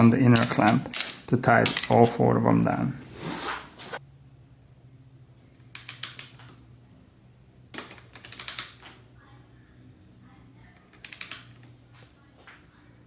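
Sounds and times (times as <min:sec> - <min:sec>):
hand tools clicking and rattling: 0:00.0 - 0:02.2.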